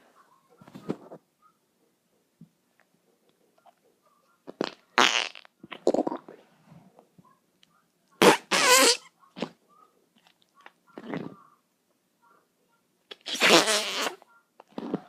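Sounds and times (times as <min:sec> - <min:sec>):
farts: 0:04.6 - 0:06.4, 0:13.2 - 0:15.0.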